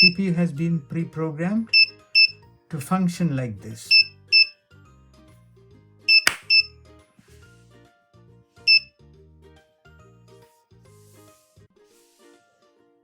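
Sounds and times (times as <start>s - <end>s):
faint background music: 0.0s - 13.0s
short high electronic beeps: 6.1s - 6.7s
hand clap: 6.2s - 6.6s.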